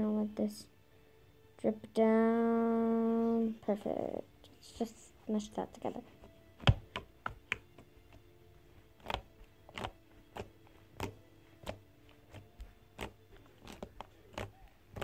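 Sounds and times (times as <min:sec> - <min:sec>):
slime squishing with sticky pops: 0:06.6 - 0:15.0.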